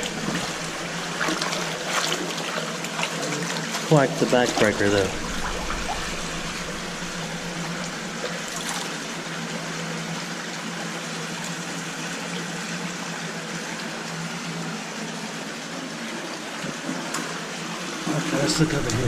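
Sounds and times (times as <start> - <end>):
steady low hum: 0.0 - 1.8, 4.0 - 9.0, 18.2 - 19.0
creek water running: 0.0 - 19.0.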